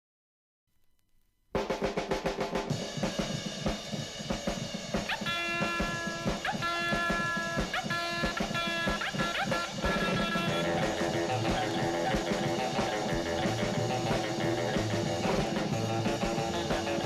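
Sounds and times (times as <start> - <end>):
drum kit beat: 1.6 - 17.0
held music notes: 5.1 - 17.0.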